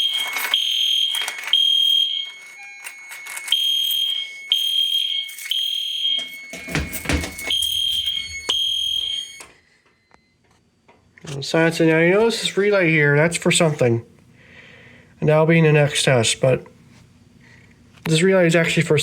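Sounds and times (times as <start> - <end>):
fire alarm horn beeps: 0.0 - 10.2.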